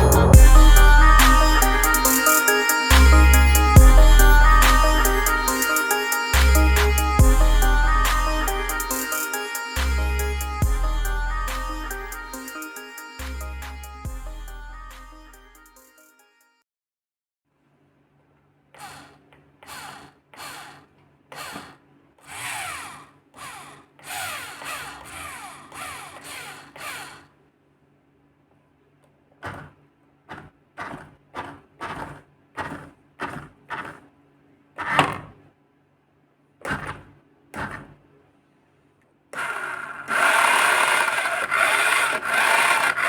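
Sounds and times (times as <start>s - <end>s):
small electric motor whirring: 18.8s - 27.4s, 39.4s - 43.0s.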